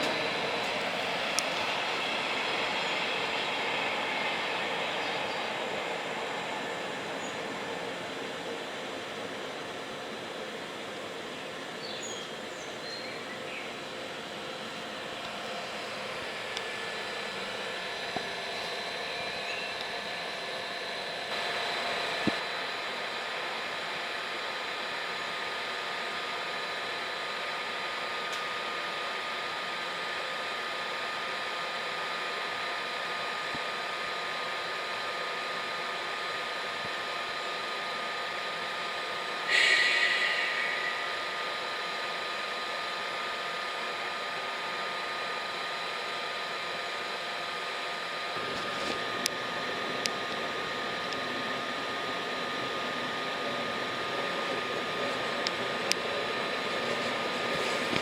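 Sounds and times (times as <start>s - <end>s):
train rolling past: 0.0s - 10.6s, 39.5s - 42.9s, 51.2s - 58.0s.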